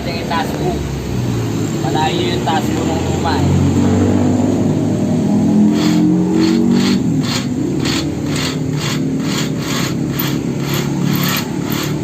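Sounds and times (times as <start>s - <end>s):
metal being sawn by hand: 5.6s - 12.0s.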